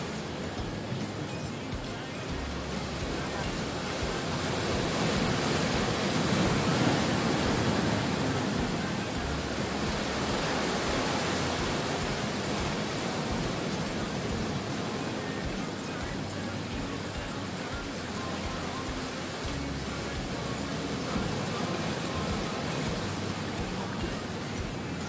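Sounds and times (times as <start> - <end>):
sea surf washing on shore: 0.0 - 25.0.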